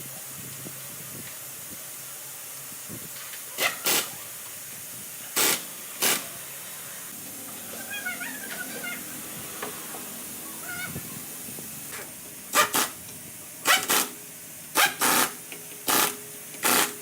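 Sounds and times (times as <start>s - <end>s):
sharp hissing bursts: 0.0s - 17.0s
steady background hiss: 0.0s - 17.0s.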